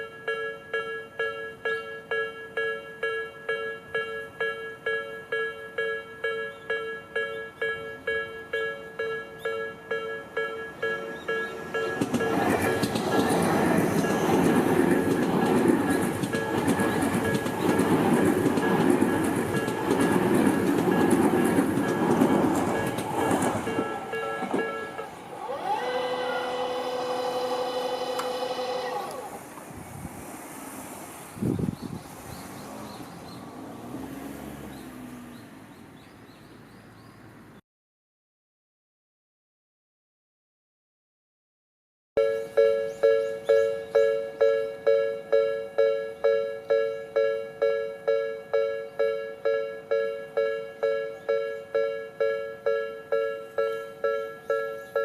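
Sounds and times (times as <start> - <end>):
level crossing alarm bell: 0.0 - 13.2, 20.9 - 29.2, 42.2 - 55.0
barrier motor whining: 25.2 - 29.5.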